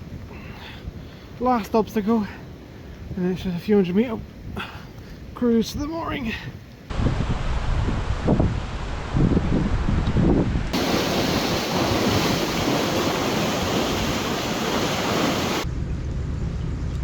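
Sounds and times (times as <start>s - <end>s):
wind buffeting microphone: 6.5s - 15.7s
loud rushing hiss: 10.8s - 15.6s.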